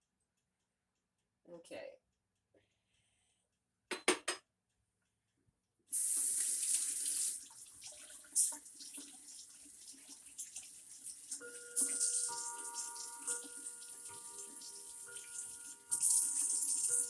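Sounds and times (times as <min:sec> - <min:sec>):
tap water running into sink: 0:05.9 - 0:17.0.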